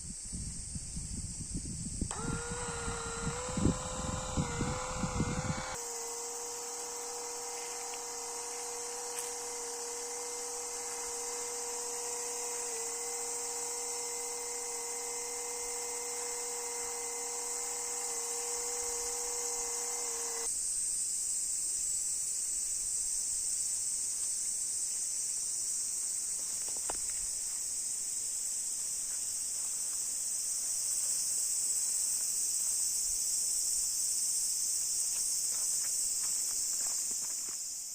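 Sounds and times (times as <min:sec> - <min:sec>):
insect chorus: 0:00.0 - 0:37.9
small electric motor humming: 0:01.1 - 0:20.5.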